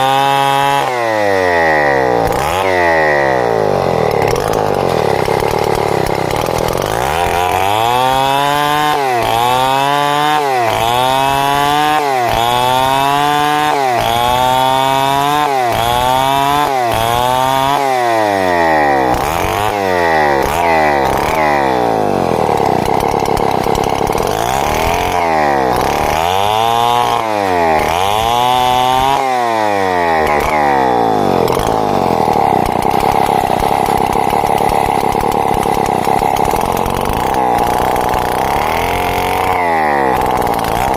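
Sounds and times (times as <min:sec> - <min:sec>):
chainsaw sawing timber: 0:00.0 - 0:40.9.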